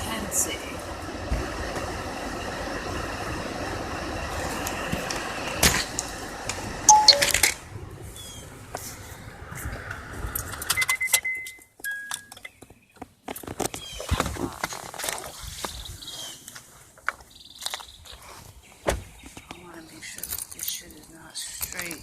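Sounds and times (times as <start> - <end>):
short electronic tones: 6.9 - 7.5.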